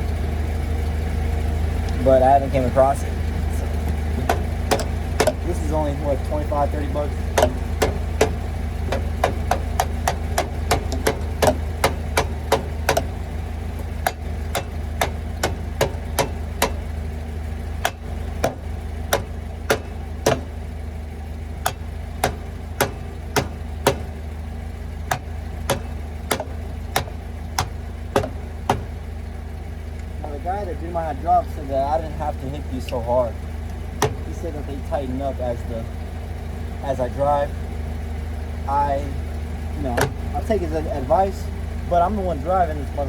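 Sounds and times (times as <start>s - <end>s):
steady low hum: 0.0s - 43.0s
hammer striking metal spinner: 7.3s - 13.2s, 14.0s - 16.9s, 17.8s - 20.6s, 21.6s - 24.2s, 25.1s - 29.0s.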